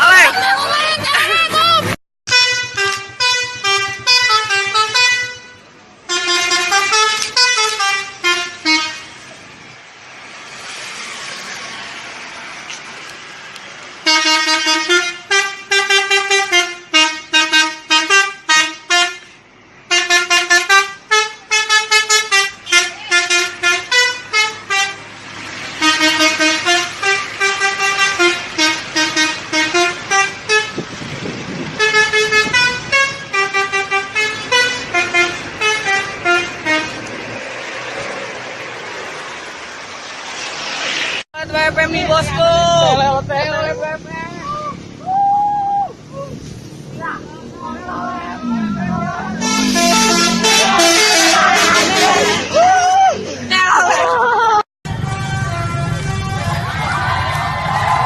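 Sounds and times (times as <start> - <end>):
rushing road noise: 0.0 - 58.0
musical bus horn: 2.3 - 9.3, 14.0 - 25.1, 25.7 - 37.4, 48.0 - 52.6, 54.9 - 56.9.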